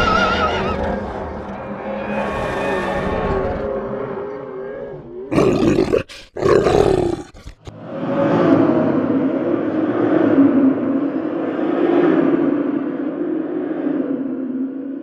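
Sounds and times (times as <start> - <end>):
harsh demon roars: 1.8 - 7.8
demon growling: 2.1 - 7.8.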